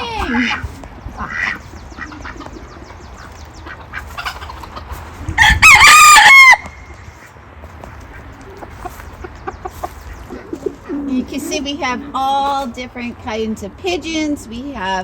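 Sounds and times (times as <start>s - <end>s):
rooster crowing: 5.4s - 6.7s.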